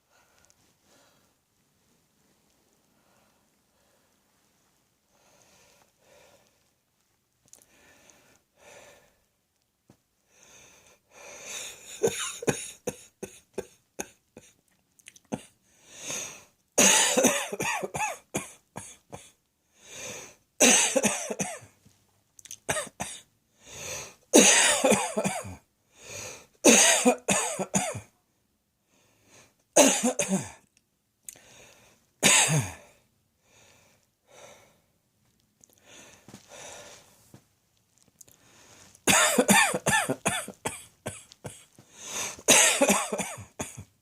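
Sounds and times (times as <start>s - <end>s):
person coughing: 11.8s - 14.6s, 16.8s - 19.4s, 20.6s - 21.7s, 22.7s - 23.2s, 24.4s - 25.6s, 26.7s - 28.1s, 29.8s - 30.6s, 32.2s - 32.9s, 39.1s - 43.9s.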